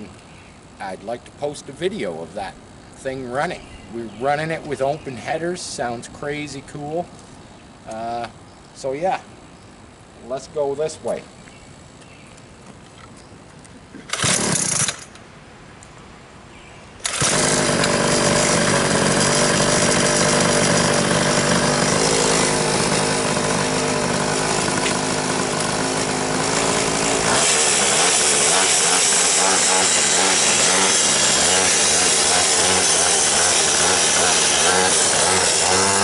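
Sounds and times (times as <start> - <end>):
small engine running: 14.1 - 15.1, 17.0 - 36.0.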